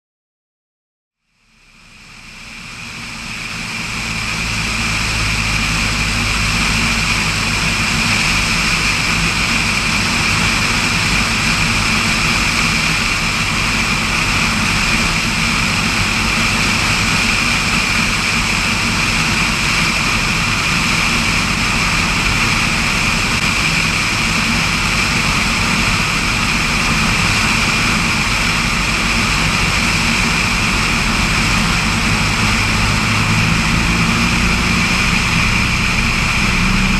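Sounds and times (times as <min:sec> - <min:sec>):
floatplane engine and propeller: 0:01.2 - 0:36.9.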